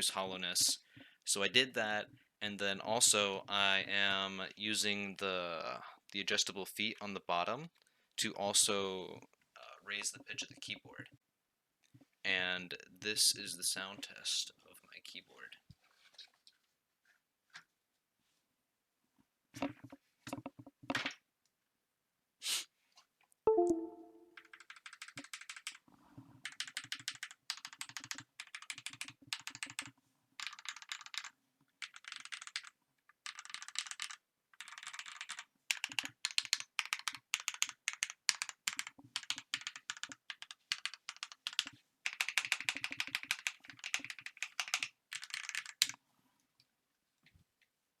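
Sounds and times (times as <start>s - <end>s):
mechanical keyboard typing: 23.6s - 25.8s, 26.4s - 46.0s.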